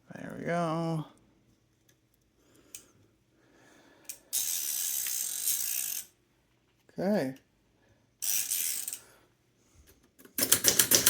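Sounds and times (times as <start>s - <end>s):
typewriter ribbon ratchet clicking: 4.4s - 6.1s, 8.2s - 9.0s, 10.2s - 11.0s
small mechanism clicks: 10.2s - 11.0s.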